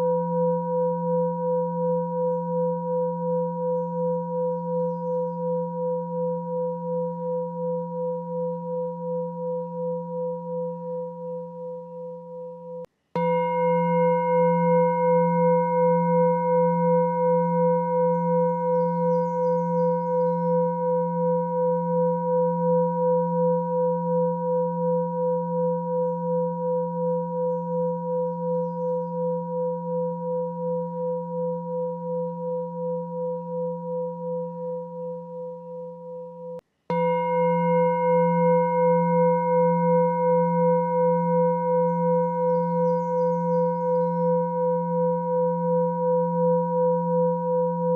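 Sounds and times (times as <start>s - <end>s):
meditation drone of ringing tones: 0.0s - 47.9s.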